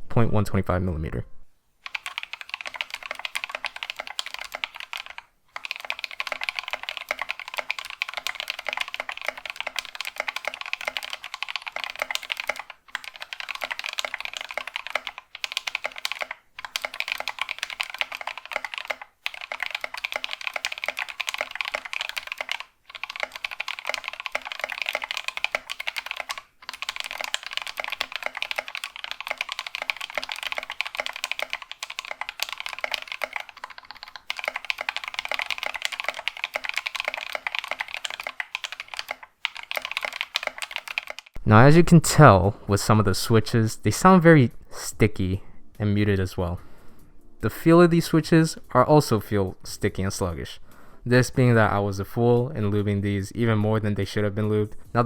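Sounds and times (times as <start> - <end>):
mechanical keyboard typing: 1.8 - 41.4.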